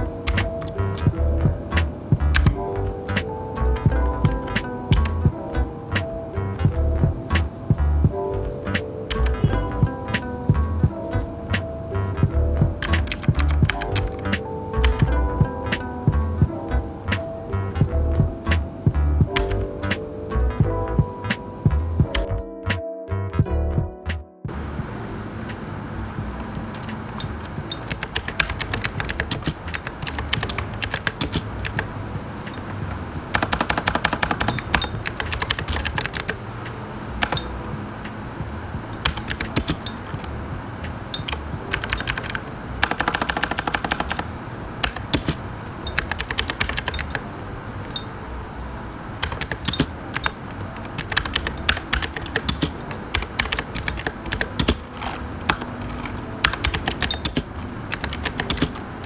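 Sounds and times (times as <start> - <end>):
mechanical keyboard typing: 0.0 - 6.1, 8.7 - 10.5, 12.6 - 16.0, 19.2 - 20.1, 25.8 - 38.2, 38.8 - 48.2, 49.2 - 59.0.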